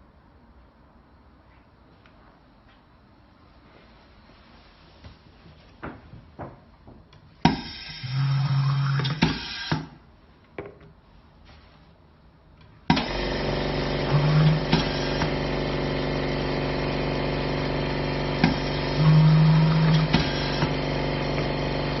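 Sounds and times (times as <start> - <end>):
pneumatic machine clunks and clicks: 7.4 - 10.0, 12.9 - 13.4, 14.1 - 15.4, 18.4 - 21.5
motor droning: 13.0 - 22.0.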